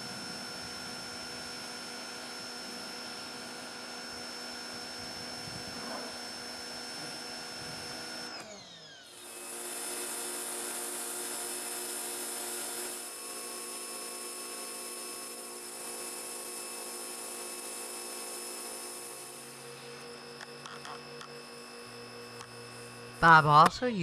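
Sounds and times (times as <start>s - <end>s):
pressure washer motor humming: 0.0s - 24.0s.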